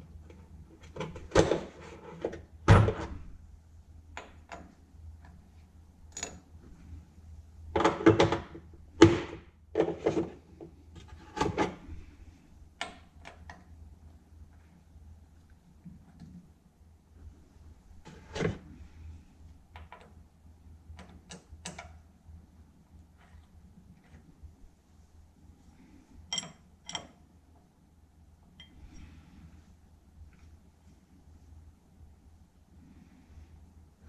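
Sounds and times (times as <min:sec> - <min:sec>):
metallic tool clanks and knocks: 0:26.3 - 0:27.2.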